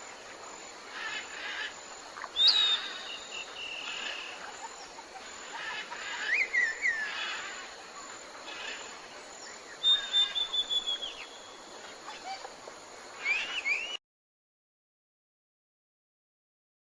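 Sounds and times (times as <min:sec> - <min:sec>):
steady background hiss: 0:00.0 - 0:14.0
high chirping calls: 0:02.2 - 0:07.6, 0:09.5 - 0:12.5, 0:13.2 - 0:14.0.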